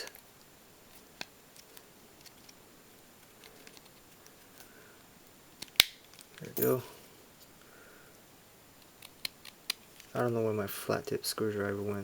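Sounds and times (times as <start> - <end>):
small clicks and taps of handling parts: 3.4 - 4.7.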